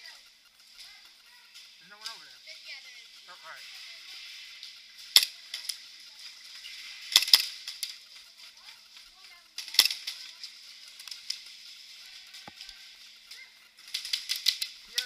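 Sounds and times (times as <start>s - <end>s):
airsoft guns firing sharp pops: 3.6s - 15.0s.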